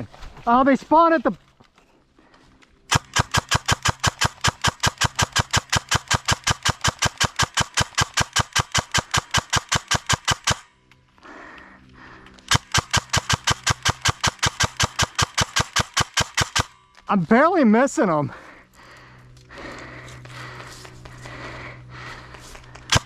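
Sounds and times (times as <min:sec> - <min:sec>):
airsoft gun firing: 0:02.9 - 0:10.7, 0:12.5 - 0:16.8.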